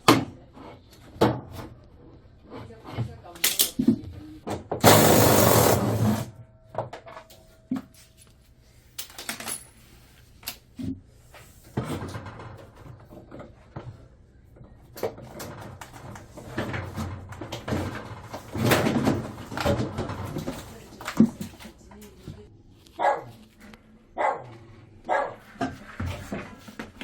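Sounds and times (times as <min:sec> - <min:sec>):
loud burst of noise: 0:04.8 - 0:06.3.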